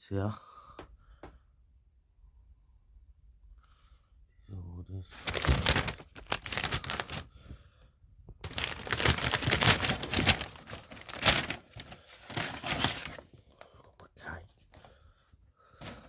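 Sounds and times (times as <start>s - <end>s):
food bag and wrappings rustling: 5.1s - 7.6s, 8.4s - 13.3s.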